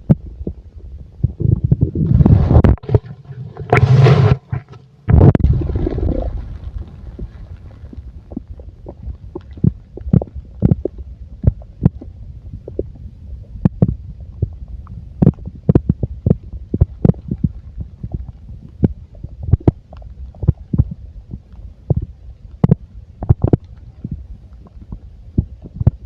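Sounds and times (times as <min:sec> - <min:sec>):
low steady rumble: 0:00.0 - 0:26.0
stomach gurgling: 0:00.0 - 0:26.0.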